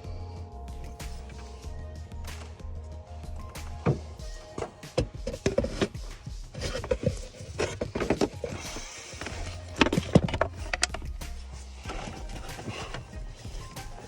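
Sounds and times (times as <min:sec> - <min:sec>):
background music: 0:00.0 - 0:14.0
knocks and clicks: 0:03.3 - 0:14.0.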